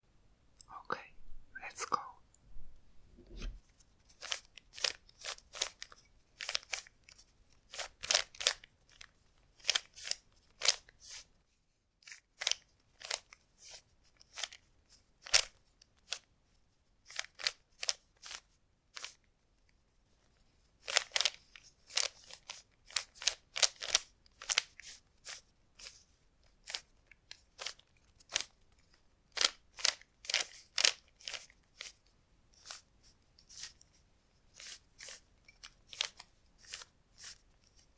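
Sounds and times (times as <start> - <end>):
puzzle cube plastic clicks: 29.3 - 32.0.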